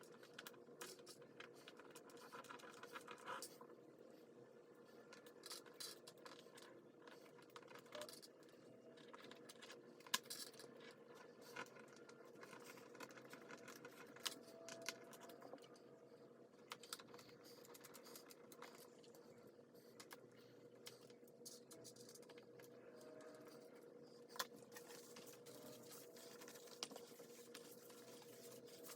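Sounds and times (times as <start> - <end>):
faint steady hum: 0.0 - 28.9.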